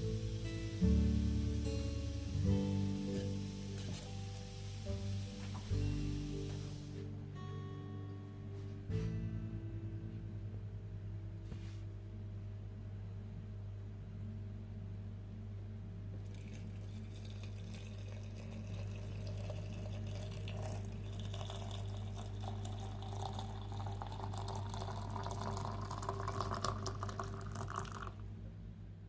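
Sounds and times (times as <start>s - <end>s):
tea pouring into a cup: 16.2s - 28.3s.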